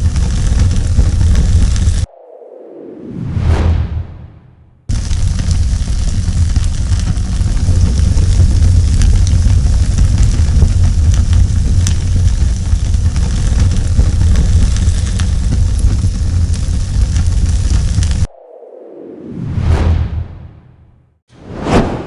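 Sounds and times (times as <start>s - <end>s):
fire crackling and popping: 0.0s - 2.1s, 4.9s - 18.3s
flames burning: 0.0s - 2.1s, 4.9s - 18.3s.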